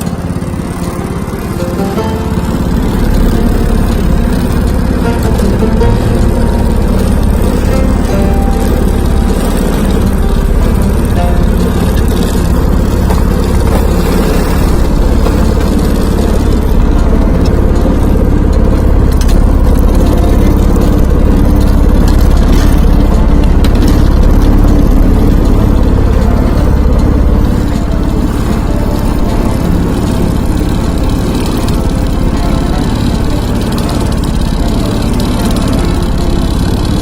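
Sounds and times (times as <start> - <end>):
small engine running: 0.0 - 37.0.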